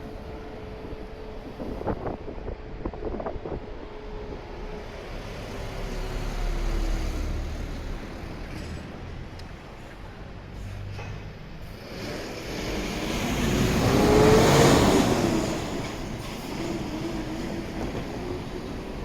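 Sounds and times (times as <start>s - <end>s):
street traffic: 3.6s - 19.0s
vehicle passing close by: 11.8s - 15.8s.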